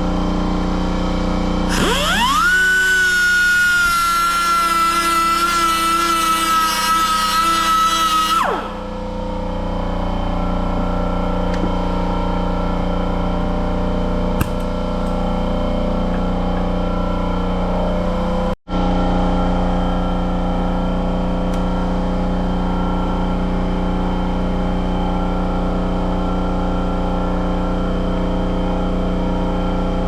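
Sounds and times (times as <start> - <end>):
cut-off tool whining: 1.6 - 9.3.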